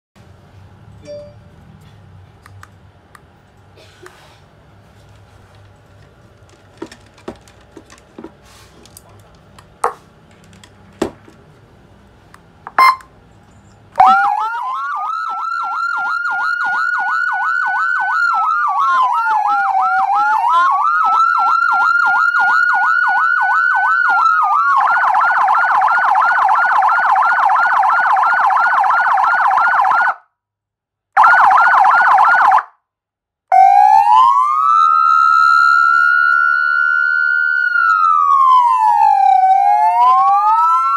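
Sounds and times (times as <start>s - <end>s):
electronic siren wailing: 12.7s - 13.1s, 14.0s - 30.2s, 31.2s - 32.7s, 33.5s - 40.9s.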